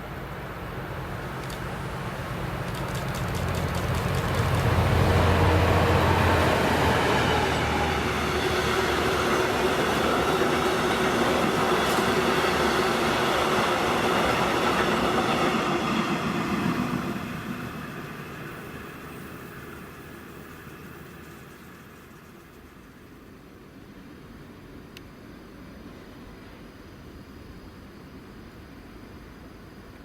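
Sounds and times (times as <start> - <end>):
locomotive engine hum: 0.0 - 23.3
train wagons rumbling on rails: 0.6 - 22.8.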